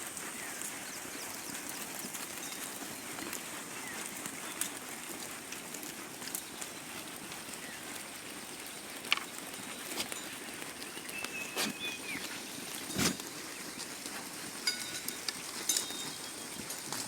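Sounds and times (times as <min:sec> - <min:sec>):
faint chirps: 0:09.2 - 0:13.6.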